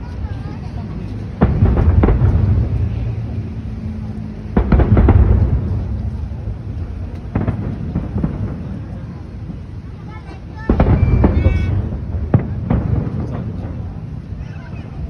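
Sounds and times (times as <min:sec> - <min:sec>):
fireworks booming: 0:00.0 - 0:15.0
fireworks crackle: 0:00.0 - 0:15.0
low rumble: 0:00.2 - 0:09.8.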